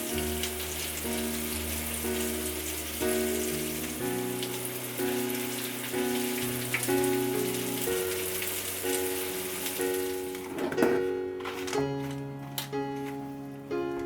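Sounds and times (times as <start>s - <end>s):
steady hiss: 0.0s - 10.3s
background music of held chords: 0.0s - 14.0s.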